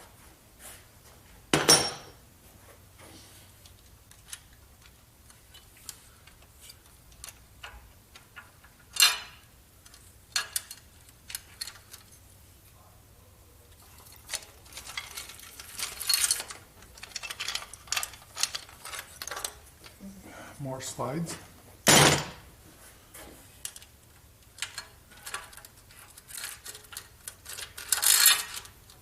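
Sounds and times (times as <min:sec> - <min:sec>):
metal scraping and rattling: 0:13.8 - 0:19.7
loud metal clank: 0:21.9 - 0:22.4.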